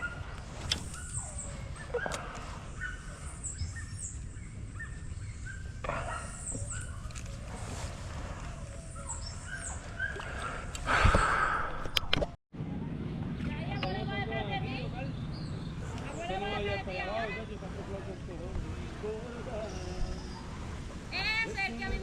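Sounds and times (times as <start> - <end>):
birds chirping: 0.0 - 11.8, 13.5 - 21.8.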